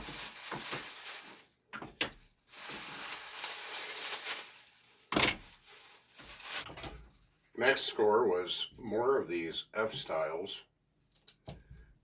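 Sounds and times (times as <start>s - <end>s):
packaging rustling: 0.0s - 6.9s.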